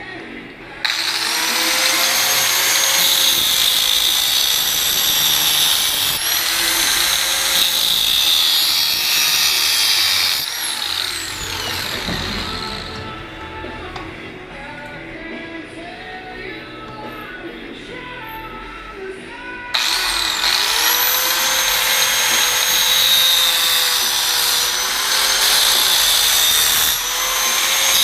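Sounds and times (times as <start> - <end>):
power tool cutting metal pipe: 0.8 - 14.1, 19.7 - 28.0.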